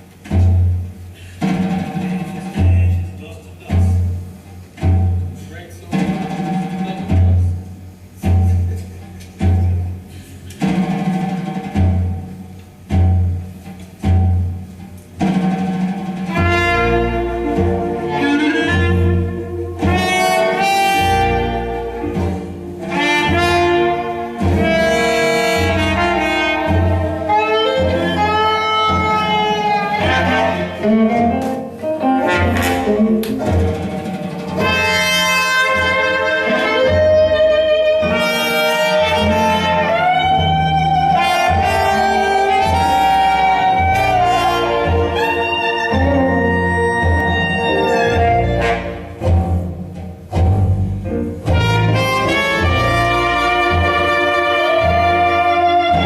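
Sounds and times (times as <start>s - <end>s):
jazz blues band playing: 0.0s - 56.0s
double bass line: 11.3s - 56.0s
saxophone and brass phrases: 16.3s - 33.8s, 34.6s - 49.6s, 51.4s - 56.0s.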